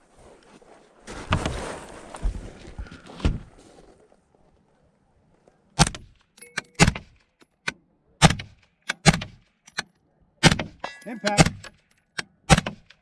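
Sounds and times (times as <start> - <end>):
short metallic pings: 6.4 - 6.9.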